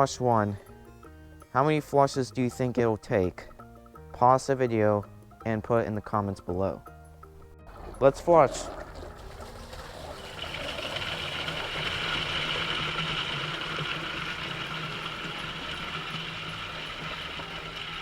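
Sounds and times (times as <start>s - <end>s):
toilet flushing: 7.6s - 18.0s.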